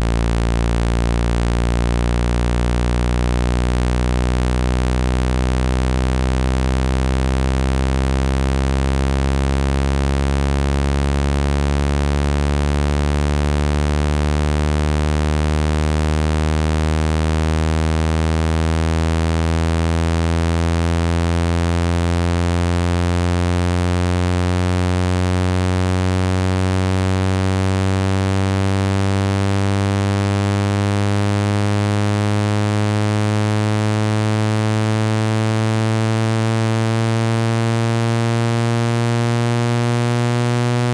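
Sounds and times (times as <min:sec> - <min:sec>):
low synthesized buzzing tone: 0:00.0 - 0:40.9.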